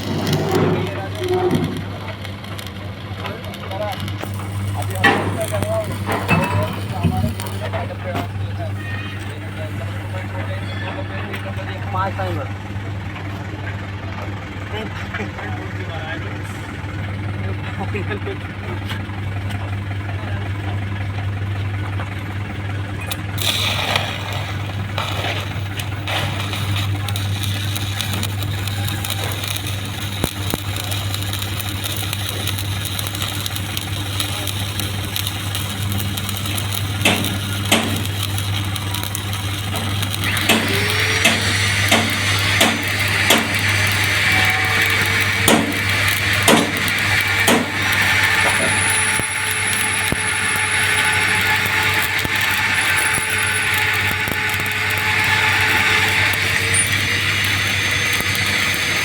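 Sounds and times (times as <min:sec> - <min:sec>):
welding arc crackling: 0:00.0 - 0:13.1, 0:16.7 - 0:59.0
welding machine hum: 0:00.0 - 0:59.0
sharp clicks: 0:23.1 - 0:59.0.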